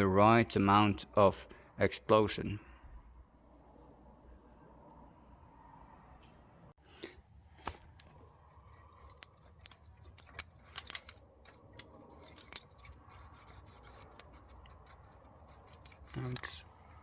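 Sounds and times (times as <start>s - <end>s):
metal tools clicking on engine: 7.6s - 16.6s.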